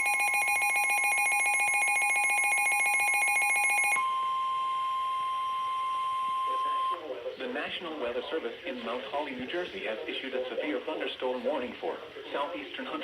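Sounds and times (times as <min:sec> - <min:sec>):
rapid pulsing alarm beeps: 0:00.0 - 0:07.0
steady radio warning tone: 0:00.0 - 0:07.4.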